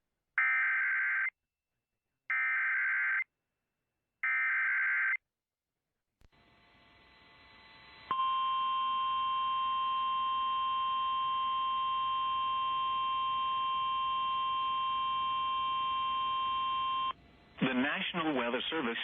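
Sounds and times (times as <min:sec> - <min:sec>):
steady electronic alarm tone: 0:06.4 - 0:17.2
faint radio static: 0:17.6 - 0:19.0.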